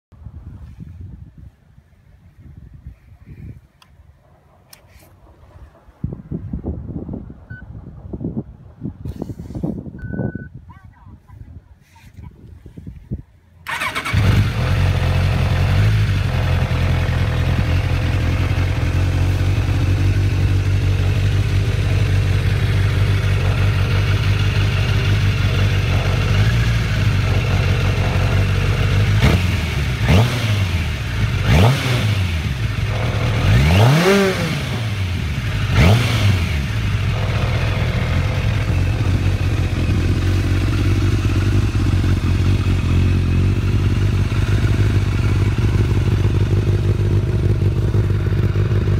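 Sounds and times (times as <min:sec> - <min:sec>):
engine idling and revving: 0:13.7 - 0:48.9.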